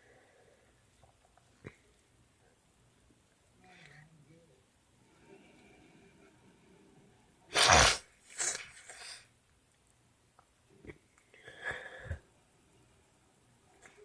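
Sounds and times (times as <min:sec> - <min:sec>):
quiet breathy sounds: 0:00.0 - 0:09.5, 0:10.3 - 0:14.0
person sneezing: 0:07.5 - 0:09.2.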